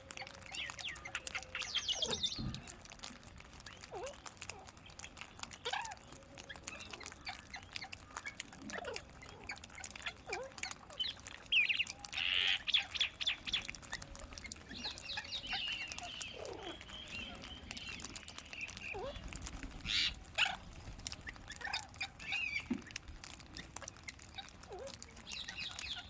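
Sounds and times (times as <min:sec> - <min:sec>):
parrots calling: 0:00.5 - 0:02.6, 0:06.7 - 0:22.7, 0:23.6 - 0:26.0.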